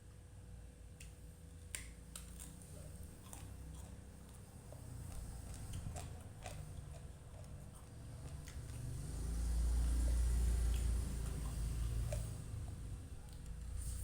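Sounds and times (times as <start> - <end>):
faint low hum: 0.0 - 14.0
person crunching and chewing food: 1.6 - 14.0.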